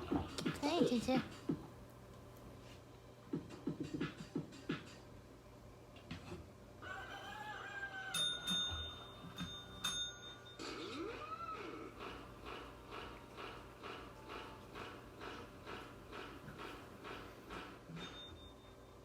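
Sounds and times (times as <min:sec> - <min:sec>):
high steady ringing tones: 0:07.9 - 0:11.1, 0:17.1 - 0:19.0.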